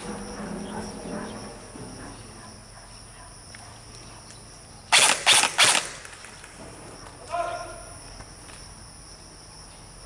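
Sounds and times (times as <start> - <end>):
airsoft gun firing bursts: 4.9 - 6.6.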